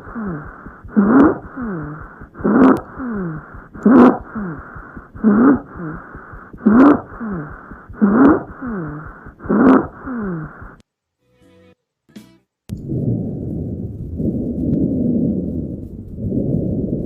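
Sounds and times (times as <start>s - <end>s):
breaths through stethoscope: 0.0s - 10.8s.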